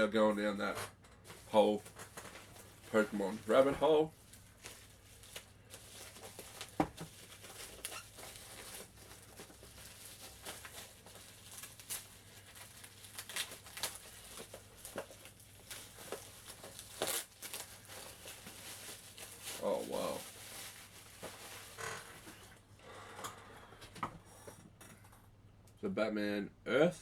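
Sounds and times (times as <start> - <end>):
packaging taps and crinkles: 4.6 - 20.2.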